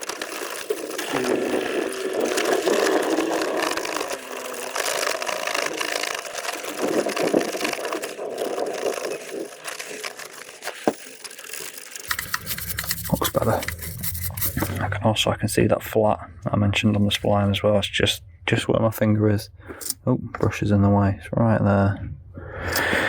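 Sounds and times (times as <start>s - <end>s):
brush scrubbing metal: 12.1s - 14.9s.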